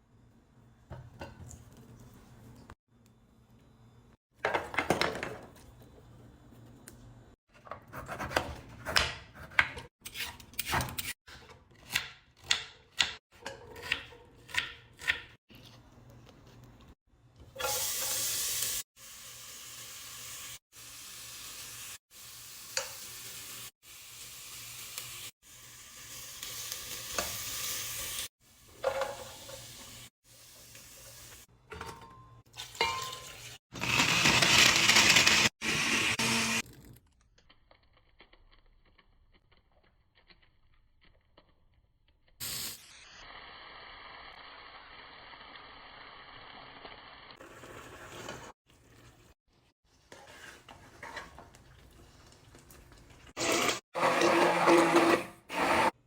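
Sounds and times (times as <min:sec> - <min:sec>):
food sizzling in a pan: 0:17.6 - 0:31.5, 0:42.4 - 0:53.8.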